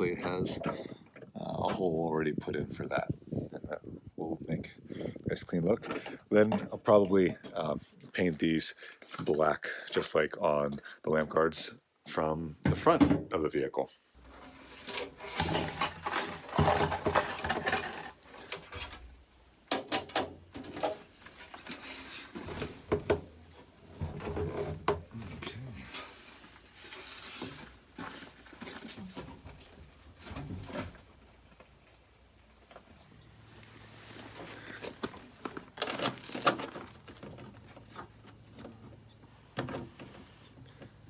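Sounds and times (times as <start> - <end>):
rustling scrapes: 14.2 - 19.1, 21.1 - 29.4, 33.5 - 39.1
tools clinking on metal parts: 14.9 - 18.8.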